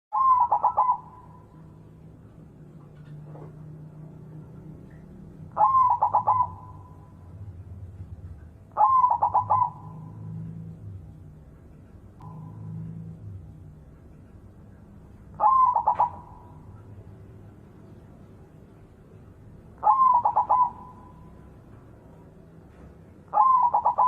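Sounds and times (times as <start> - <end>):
dove cooing: 0.2 - 1.5, 5.5 - 7.0, 8.7 - 10.7, 15.4 - 16.8, 19.8 - 21.4, 23.3 - 24.0.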